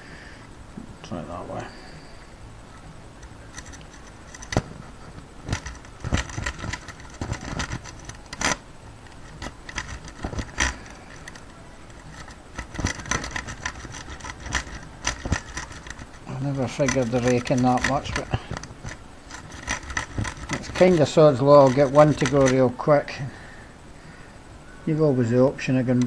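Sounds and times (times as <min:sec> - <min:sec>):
lock pick raking pins: 0:02.8 - 0:23.3.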